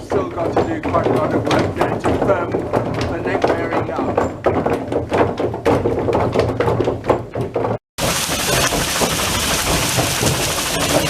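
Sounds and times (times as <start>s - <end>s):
wooden gears clattering: 0.0s - 11.0s
falling water rushing: 8.0s - 11.0s.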